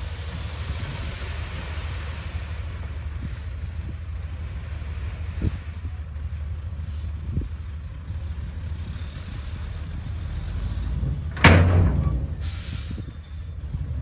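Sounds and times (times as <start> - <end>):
diesel engine rumbling: 0.0 - 14.0
loud bang: 11.2 - 12.8.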